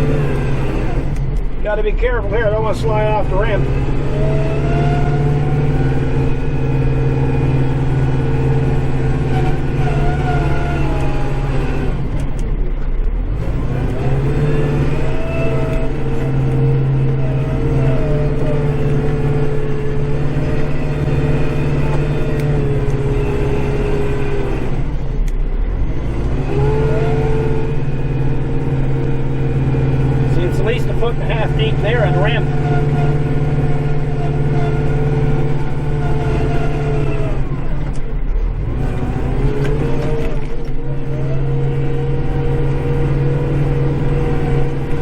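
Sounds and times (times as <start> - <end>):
tractor diesel engine running: 0.0 - 45.0.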